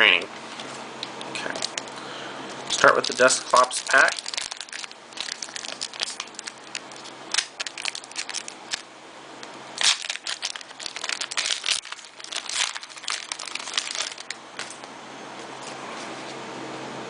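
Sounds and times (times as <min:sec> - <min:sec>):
foil wrapper crinkling: 0:00.5 - 0:08.9, 0:09.8 - 0:14.8.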